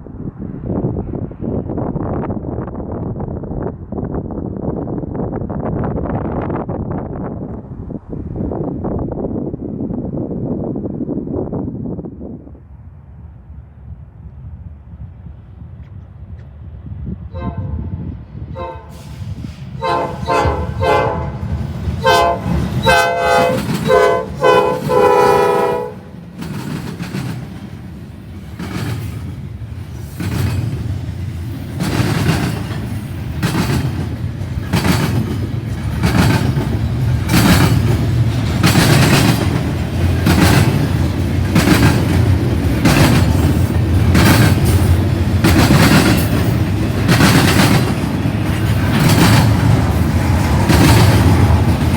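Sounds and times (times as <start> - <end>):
locomotive horn blasts: 17.4 - 17.9, 18.6 - 19.1, 19.8 - 26.1
train wheels clicking over rail joints: 18.7 - 51.9.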